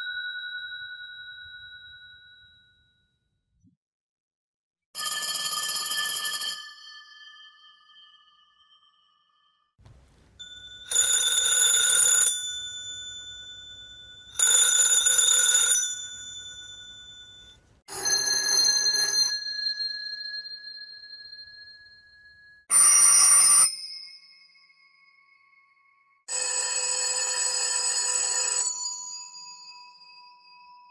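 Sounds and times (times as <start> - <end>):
telephone bell ringing: 5.0 - 7.9, 10.4 - 21.6, 22.7 - 23.8, 26.3 - 30.1.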